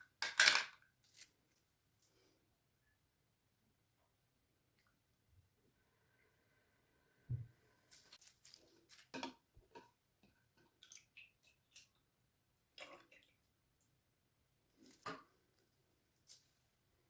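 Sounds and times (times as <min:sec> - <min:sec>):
household objects being handled: 0:07.3 - 0:10.5.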